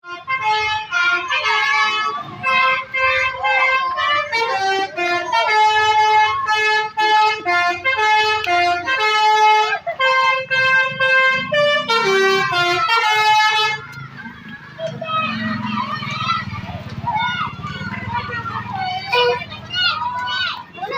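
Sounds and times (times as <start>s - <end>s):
musical air horn playing tune: 0.0s - 13.8s
low engine rumble: 0.2s - 20.9s.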